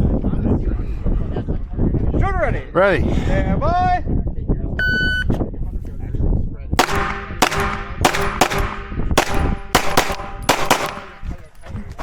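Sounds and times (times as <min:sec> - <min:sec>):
metallic target ringing: 0:06.8 - 0:11.2
pistol shots: 0:06.8 - 0:11.2.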